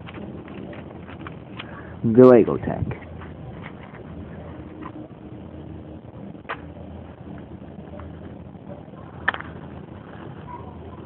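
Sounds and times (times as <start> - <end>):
outdoor rumble: 0.0 - 11.0
wind on microphone: 2.6 - 11.0.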